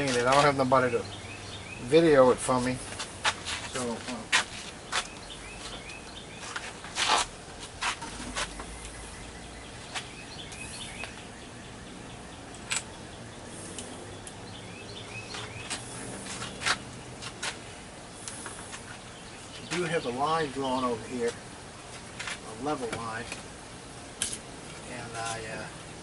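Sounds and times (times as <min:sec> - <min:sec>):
faint bird chirps: 0:08.4 - 0:16.6.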